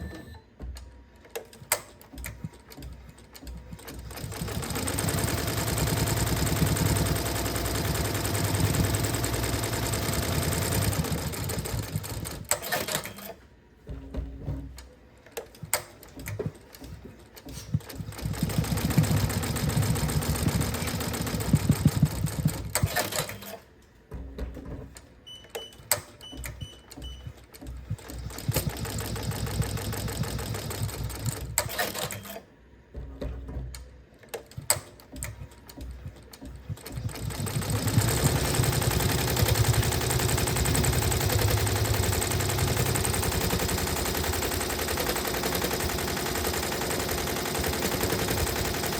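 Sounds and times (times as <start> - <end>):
sewing machine clicks: 0.8 - 13.4, 14.7 - 23.7, 25.4 - 32.5, 33.7 - 48.9
sewing machine stitching: 1.3 - 48.9.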